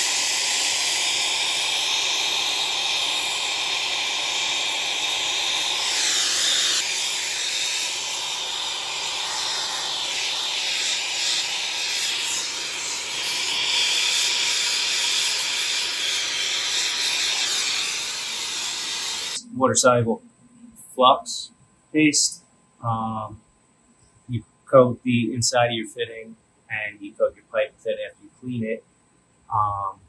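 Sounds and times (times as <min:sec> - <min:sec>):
gas torch hissing: 0:00.0 - 0:19.9.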